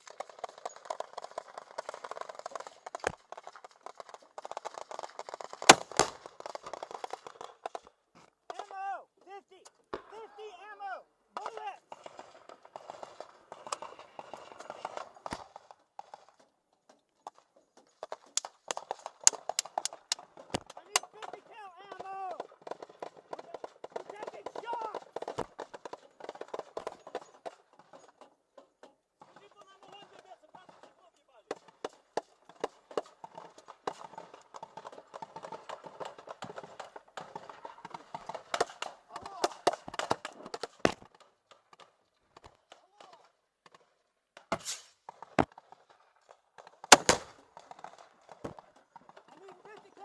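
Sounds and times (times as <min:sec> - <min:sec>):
gunfire cracks: 0:46.9 - 0:47.3.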